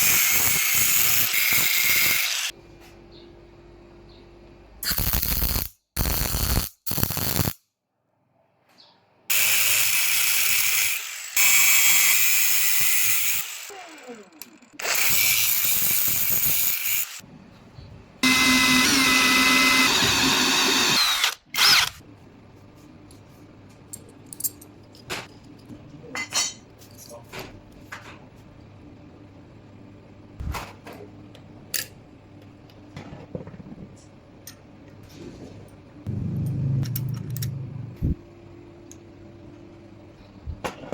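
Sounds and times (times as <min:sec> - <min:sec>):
handheld power tool running: 0:00.0 - 0:02.5, 0:09.3 - 0:17.2, 0:18.2 - 0:22.0.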